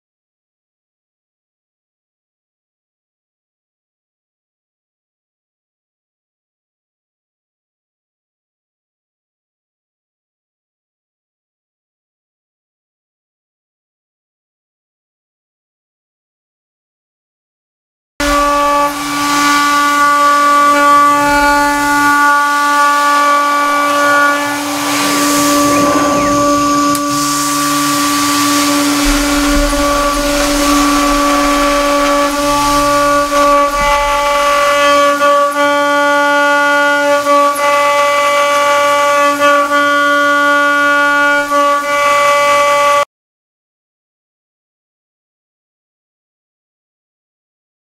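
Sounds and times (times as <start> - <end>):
router spindle high whine: 18.2 - 40.0.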